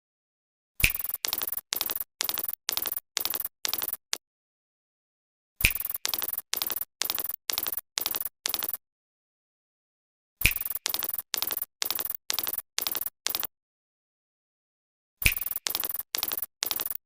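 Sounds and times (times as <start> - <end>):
repeated sound effect: 0.8 - 4.2, 5.6 - 8.8, 10.4 - 13.5, 15.2 - 17.0.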